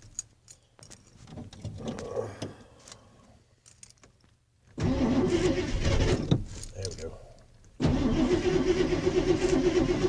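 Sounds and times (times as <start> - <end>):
engine cranking: 4.8 - 6.3, 7.8 - 10.0.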